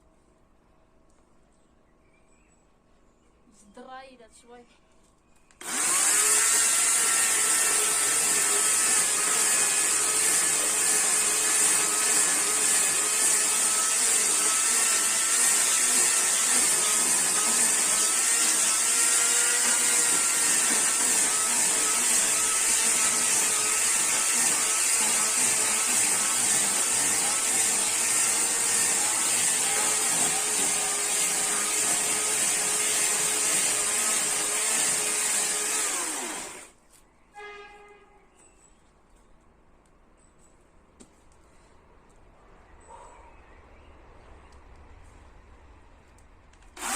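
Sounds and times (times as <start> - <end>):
chainsaw running: 5.6 - 36.8.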